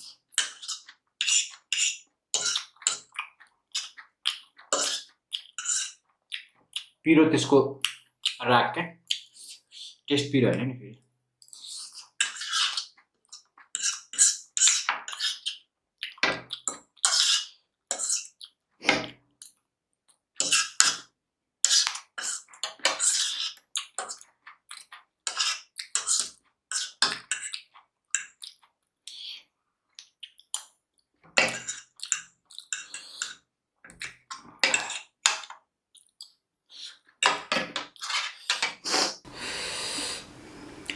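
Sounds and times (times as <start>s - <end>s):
chewing and mouth sounds: 6.3s - 7.0s, 27.4s - 28.7s.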